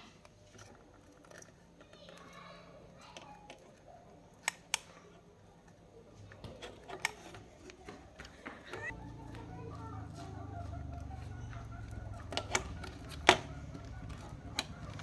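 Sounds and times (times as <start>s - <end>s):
sharp clicks: 4.3s - 5.0s, 10.5s - 15.0s.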